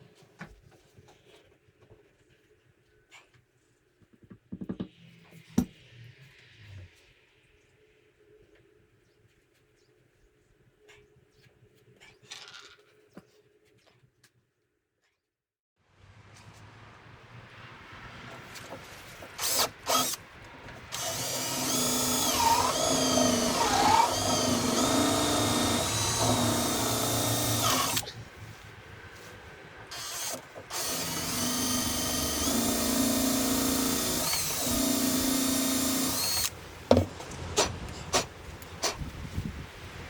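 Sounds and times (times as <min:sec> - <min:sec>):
power drill whining: 0:19.3 - 0:20.2, 0:20.9 - 0:28.1, 0:29.9 - 0:36.6.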